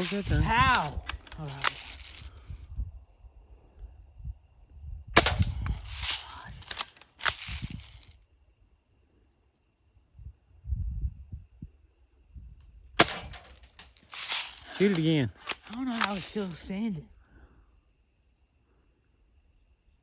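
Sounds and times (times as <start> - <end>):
small gun shots: 5.2 - 8.0, 13.0 - 16.6.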